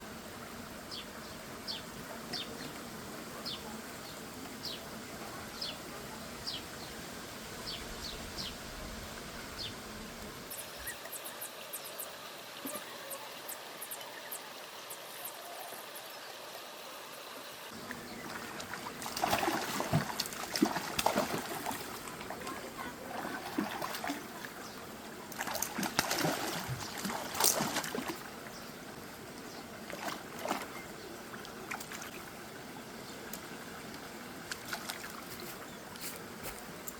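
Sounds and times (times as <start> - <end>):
water trickling and splashing: 10.4 - 36.9.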